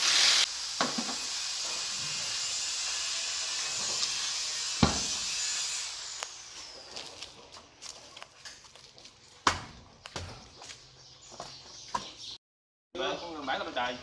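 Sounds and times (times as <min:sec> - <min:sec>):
sharp knock: 0:04.8 - 0:05.1.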